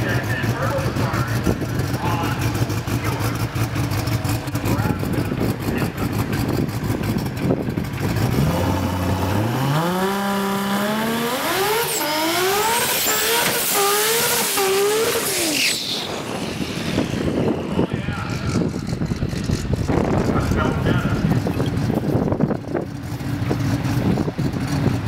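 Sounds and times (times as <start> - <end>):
drag car engine accelerating: 0.0 - 25.0.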